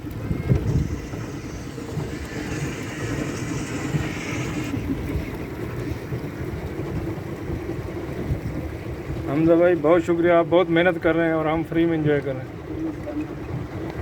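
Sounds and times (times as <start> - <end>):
small boat rumbling: 0.0 - 14.0
high hiss: 0.7 - 4.8.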